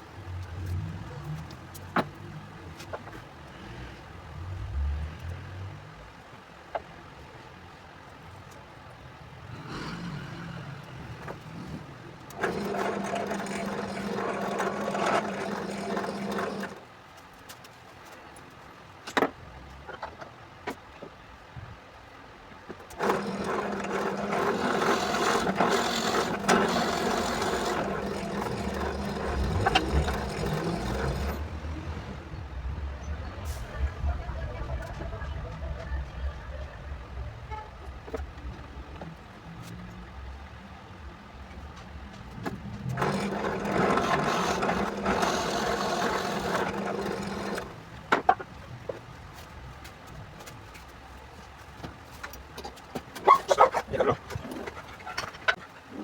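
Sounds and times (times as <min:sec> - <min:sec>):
power tool cutting wood: 0:23.0 - 0:31.6, 0:42.9 - 0:48.3.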